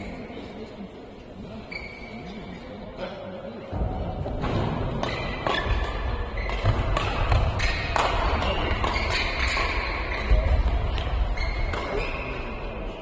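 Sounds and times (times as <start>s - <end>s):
shoe squeaks: 1.6s - 2.5s, 11.2s - 12.6s
rackets hitting shuttlecock: 4.3s - 12.6s.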